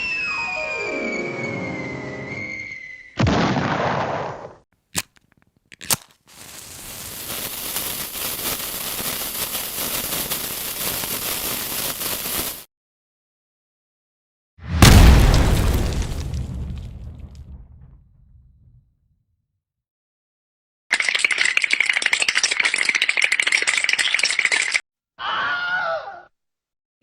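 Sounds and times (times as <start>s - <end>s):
falling whistle: 0.0s - 3.2s
loud explosion: 3.2s - 4.4s, 14.6s - 18.8s.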